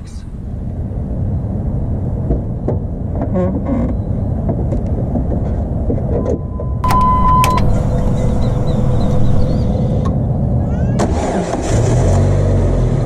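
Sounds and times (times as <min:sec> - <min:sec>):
car engine running: 0:06.8 - 0:09.9
faint steady whine: 0:06.8 - 0:09.9
short electronic beep: 0:06.8 - 0:09.9
low rumble: 0:06.8 - 0:10.0.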